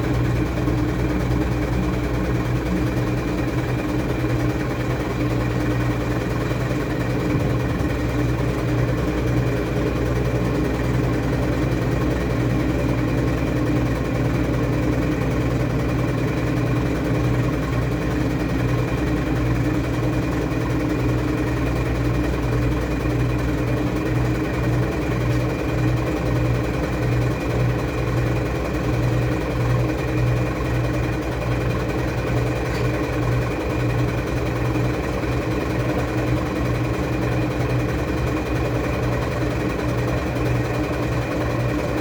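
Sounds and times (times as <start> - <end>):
washing machine motor hum: 0.0 - 42.0.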